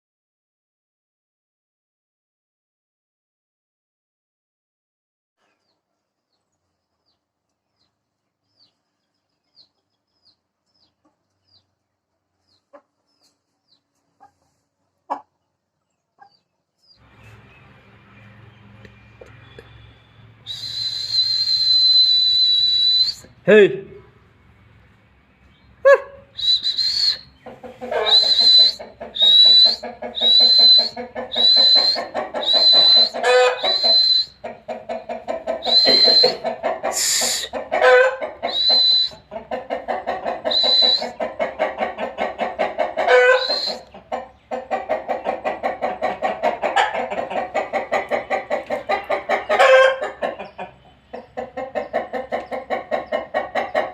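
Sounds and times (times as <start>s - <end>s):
roosters clucking: 5.4s - 53.9s
short high whistles: 19.5s - 23.3s, 26.3s - 27.3s, 28.0s - 34.4s, 35.6s - 36.4s, 37.0s - 37.5s, 38.5s - 39.2s, 40.5s - 41.2s, 43.3s - 43.9s
rooster cries: 27.9s - 34.2s, 35.6s - 39.1s, 43.0s - 43.8s, 49.5s - 50.1s.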